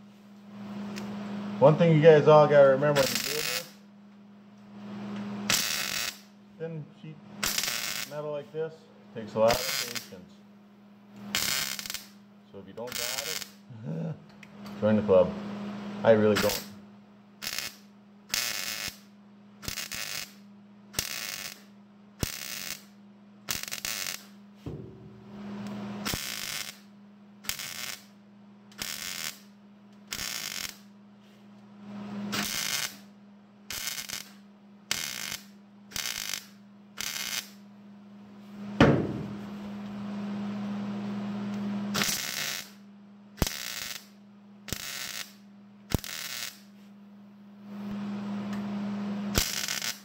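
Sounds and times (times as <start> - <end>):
steady low hum: 0.0 - 50.0
welding hiss: 2.9 - 3.8, 5.5 - 6.3, 7.4 - 8.4, 9.4 - 10.2, 11.3 - 12.2, 12.8 - 13.6, 16.3 - 16.8, 17.4 - 20.4, 21.0 - 24.4, 26.0 - 26.9, 27.5 - 28.1, 28.8 - 29.5, 30.1 - 30.9, 32.3 - 33.1, 33.7 - 37.6, 42.0 - 42.8, 43.4 - 46.7, 49.3 - 50.0
loud knock: 24.7 - 25.2, 38.8 - 39.4.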